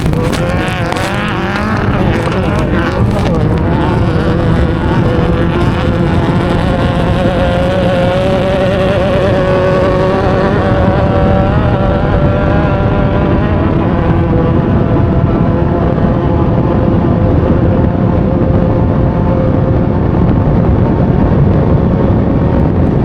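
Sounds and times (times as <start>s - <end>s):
race vehicle engine running hard: 0.0s - 23.0s.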